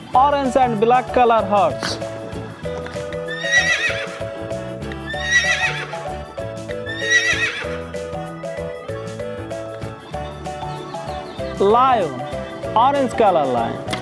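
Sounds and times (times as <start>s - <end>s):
background music: 0.0s - 14.0s
horse whinnying: 2.9s - 8.1s.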